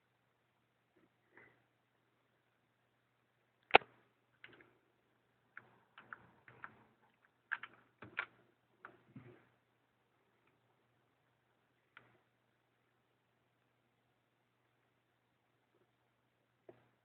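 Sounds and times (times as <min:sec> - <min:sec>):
light irregular clicks and taps: 0:05.5 - 0:09.5, 0:11.8 - 0:12.3, 0:16.6 - 0:17.0.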